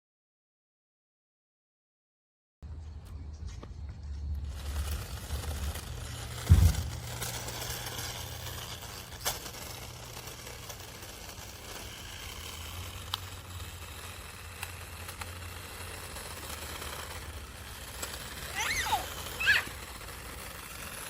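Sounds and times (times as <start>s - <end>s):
toy car electric motors humming: 4.0s - 21.0s.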